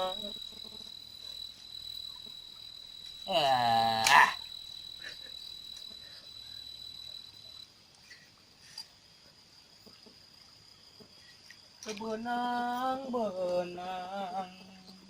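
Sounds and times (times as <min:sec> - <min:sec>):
cricket chirring: 0:00.0 - 0:15.0
low voiced sound: 0:03.3 - 0:04.4.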